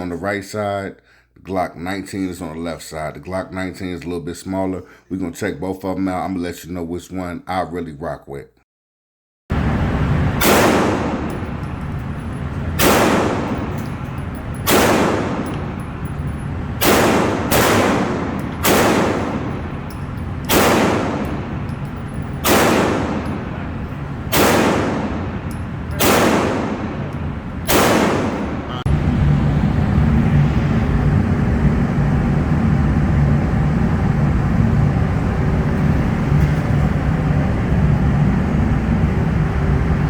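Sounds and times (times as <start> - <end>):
steady low rumble: 9.5 - 40.0
pistol shots ringing: 10.4 - 28.7.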